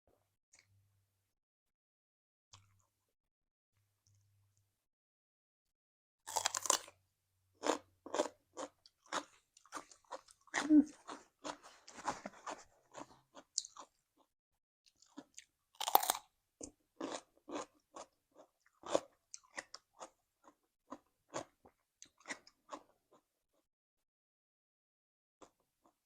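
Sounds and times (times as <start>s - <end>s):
chewing and crunching food: 6.3s - 7.0s, 7.6s - 14.3s, 14.9s - 23.7s.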